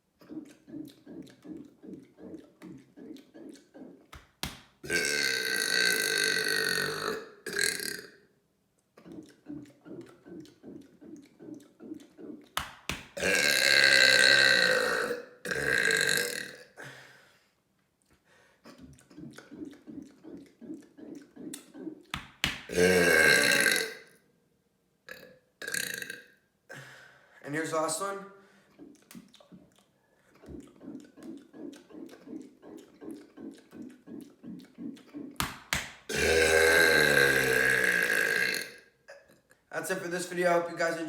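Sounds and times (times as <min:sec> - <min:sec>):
quiet rhythmic pulses: 0:00.0 - 0:04.9, 0:08.9 - 0:13.2, 0:18.2 - 0:22.5, 0:27.6 - 0:36.1
person burping loudly: 0:04.8 - 0:08.2, 0:13.1 - 0:17.0, 0:22.7 - 0:24.2, 0:25.1 - 0:26.8, 0:30.4 - 0:39.4.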